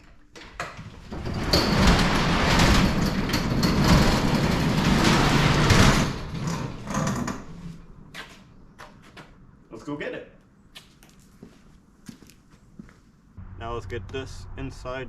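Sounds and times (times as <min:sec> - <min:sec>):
rolling rattling mechanical noise: 0:00.6 - 0:08.2.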